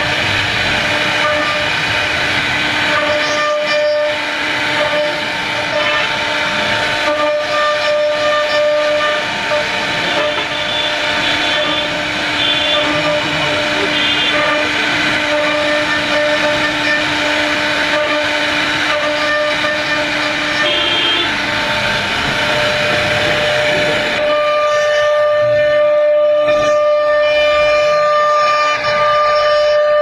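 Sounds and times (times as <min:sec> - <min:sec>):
router spindle whine: 0:00.0 - 0:27.1.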